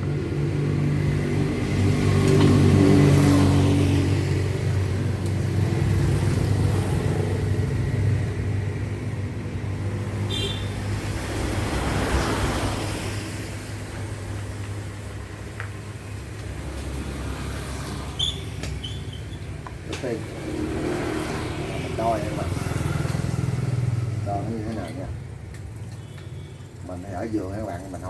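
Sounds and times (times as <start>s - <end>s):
vehicles passing: 0.0s - 28.0s.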